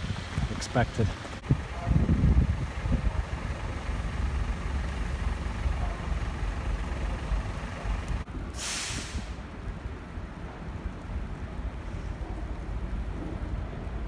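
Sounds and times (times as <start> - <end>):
road traffic rumble: 0.0 - 14.0
short hiss: 8.6 - 9.4.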